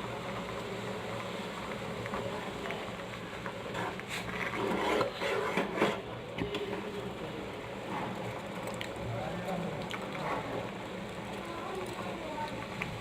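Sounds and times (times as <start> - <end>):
liquid boiling in a pan: 0.0 - 13.0.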